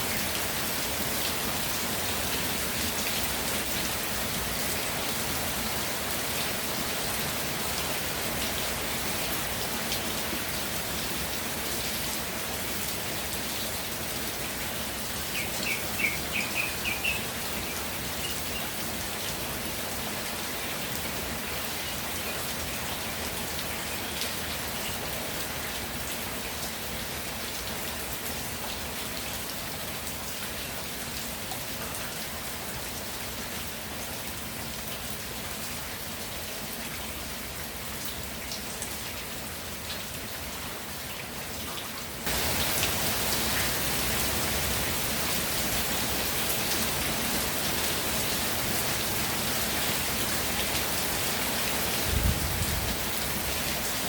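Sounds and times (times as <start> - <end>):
raindrops ticking on surfaces: 0.0 - 54.0
steady rainfall: 0.0 - 54.0
bird high chirps: 15.4 - 17.3.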